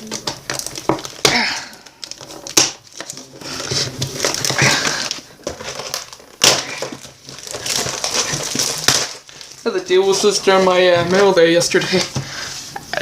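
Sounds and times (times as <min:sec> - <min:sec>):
packaging being torn open: 0:00.0 - 0:10.4.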